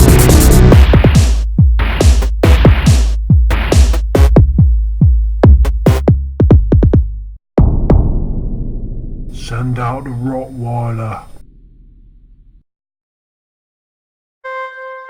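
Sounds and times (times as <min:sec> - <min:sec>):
electronic dance music: 0:00.0 - 0:04.4
drum-machine hits: 0:00.0 - 0:09.4.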